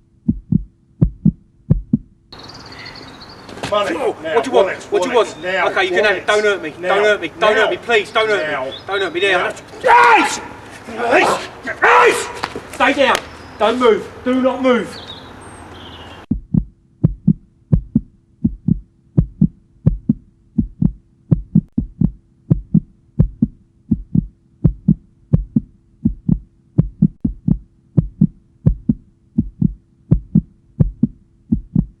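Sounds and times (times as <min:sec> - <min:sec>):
heartbeat double thumps: 0:00.0 - 0:02.4, 0:16.3 - 0:32.0.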